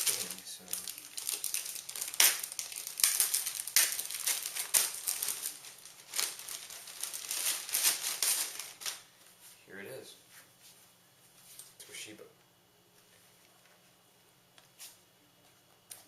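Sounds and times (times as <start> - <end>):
packaging crinkling: 0.0 - 9.1.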